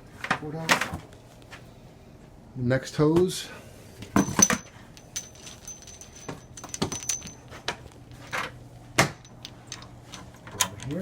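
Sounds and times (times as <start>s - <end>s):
metal fittings clinking: 4.2s - 8.5s, 9.1s - 11.0s.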